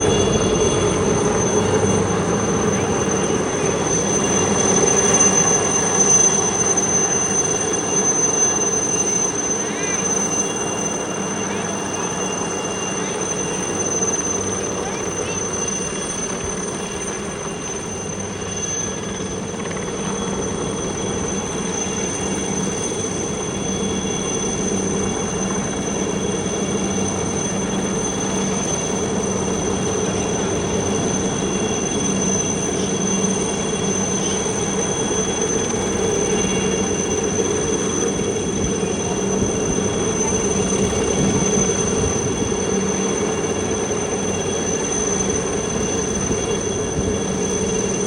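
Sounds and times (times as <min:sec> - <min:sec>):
helicopter turbine whine and drone: 0:00.0 - 0:48.0.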